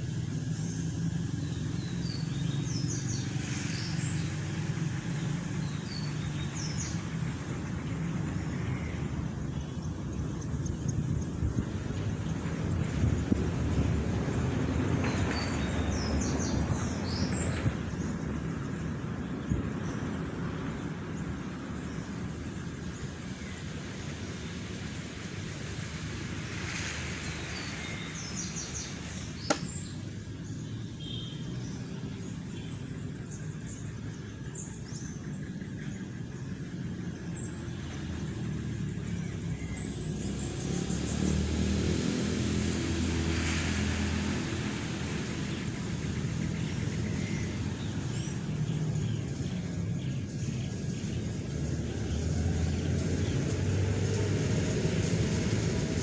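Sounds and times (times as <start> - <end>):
birds chirping: 27.2 - 41.9
sharp click: 29.4 - 29.9.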